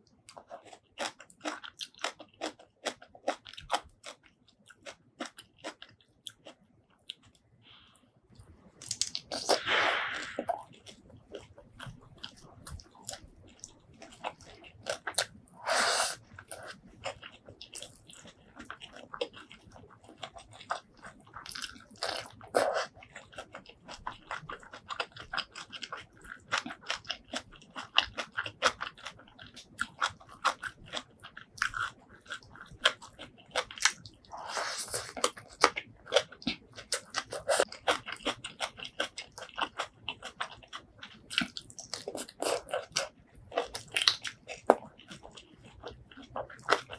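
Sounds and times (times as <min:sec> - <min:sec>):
close-miked chewing: 0:00.0 - 0:07.5, 0:08.3 - 0:46.9
rushing noise: 0:09.5 - 0:10.5.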